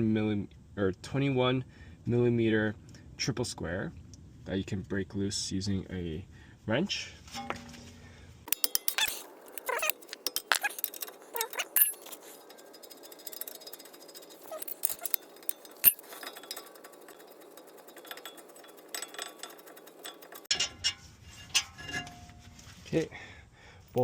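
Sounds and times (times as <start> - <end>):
metal hand tools clinking: 8.5 - 21.0
short falling squeaks: 8.9 - 15.2.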